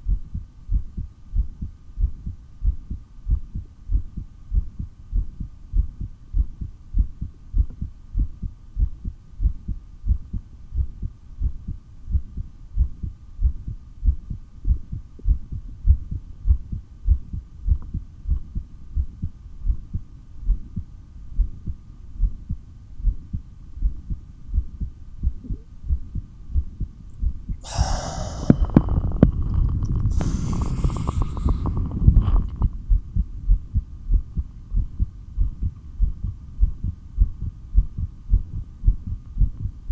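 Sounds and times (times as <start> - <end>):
heartbeat through stethoscope: 0.0 - 39.9
loud rushing breath: 27.6 - 32.5.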